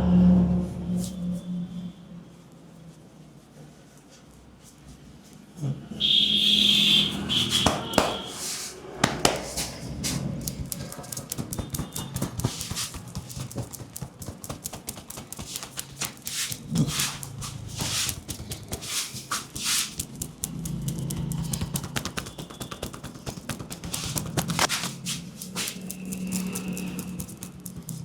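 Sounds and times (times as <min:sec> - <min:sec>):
hands slapping and tapping skin: 0:07.5 - 0:08.4, 0:09.0 - 0:28.0.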